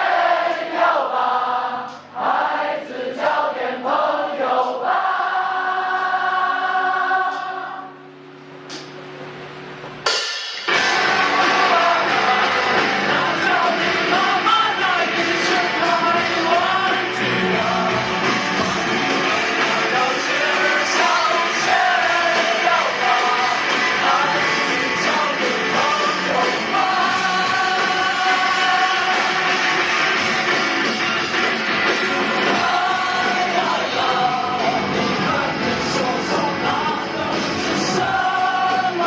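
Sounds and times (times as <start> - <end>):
electric guitars: 7.3 - 39.0
drum kit: 8.5 - 39.0
person singing: 10.7 - 29.6, 31.0 - 39.0.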